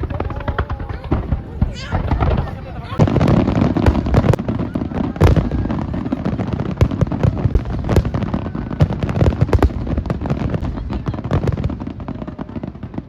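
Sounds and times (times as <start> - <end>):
continuous rumble: 0.0 - 8.8
fireworks bangs and crackles: 0.0 - 13.0.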